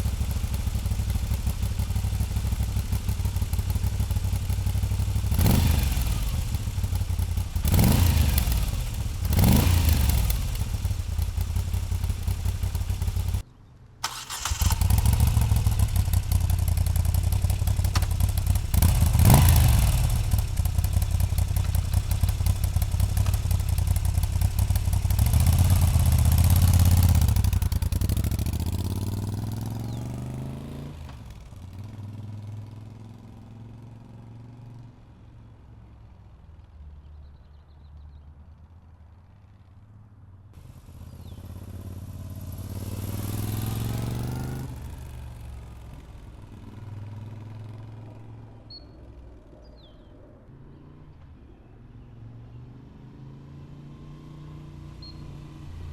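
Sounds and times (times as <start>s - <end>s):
motorcycle engine running: 0.0s - 13.4s, 14.0s - 34.8s, 40.6s - 49.0s, 54.7s - 55.9s
engine throttle blips: 14.0s - 28.4s.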